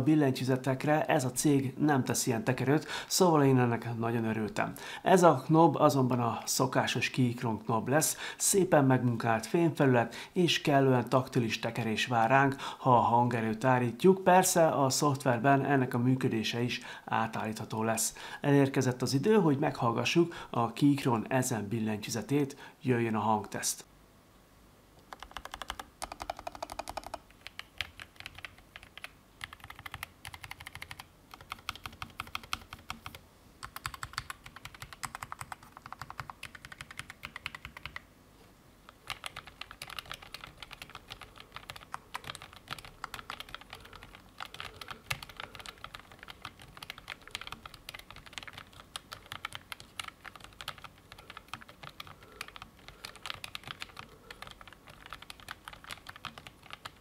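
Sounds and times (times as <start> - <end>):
mechanical keyboard typing: 25.0 - 38.0, 38.9 - 57.0.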